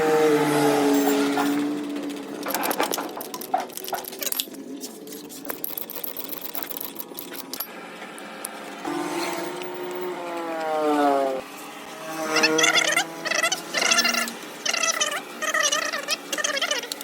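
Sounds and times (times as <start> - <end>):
hand tools clicking and rattling: 1.0 - 7.8
pitched motor sound: 5.2 - 17.0.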